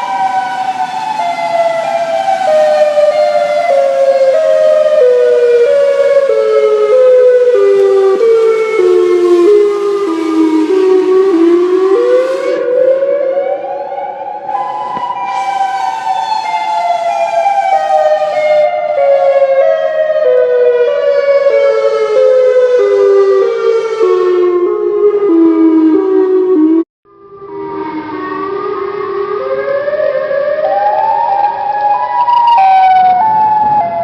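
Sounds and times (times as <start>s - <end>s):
tornado siren wailing: 0.0s - 34.0s.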